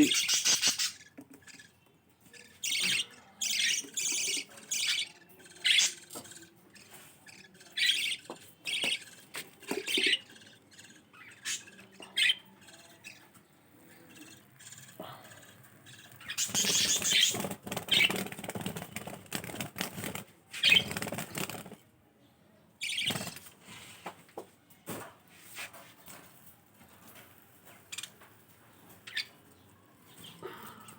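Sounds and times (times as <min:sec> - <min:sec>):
budgerigars chirping and squawking: 0:00.0 - 0:18.2, 0:22.8 - 0:23.4, 0:28.8 - 0:29.4.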